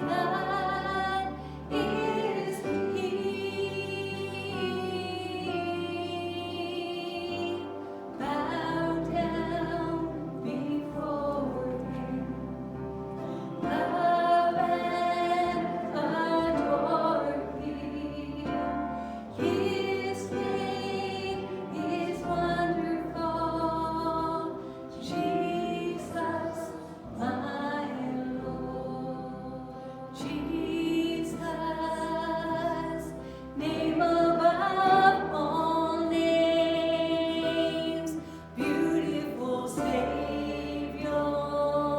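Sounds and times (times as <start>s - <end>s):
voices singing worship music: 0.0s - 41.9s.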